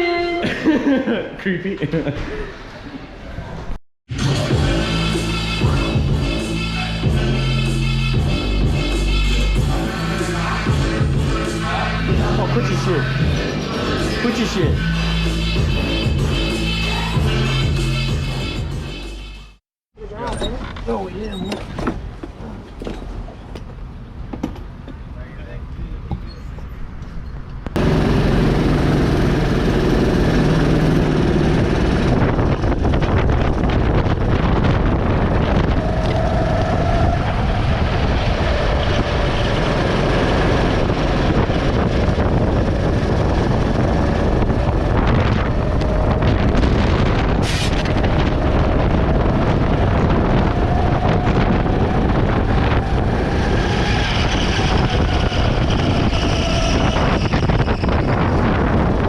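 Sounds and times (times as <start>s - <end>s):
wind rushing over microphone: 26.8s - 59.0s
go-kart engine running: 27.8s - 33.8s, 37.7s - 56.2s.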